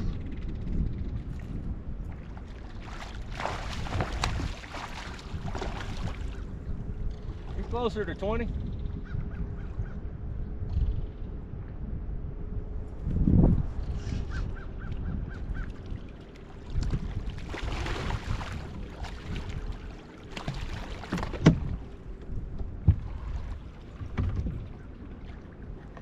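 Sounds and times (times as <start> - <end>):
wind buffeting microphone: 0.0 - 26.0
knocks against boat: 20.4 - 21.9, 22.6 - 23.2, 24.0 - 24.7.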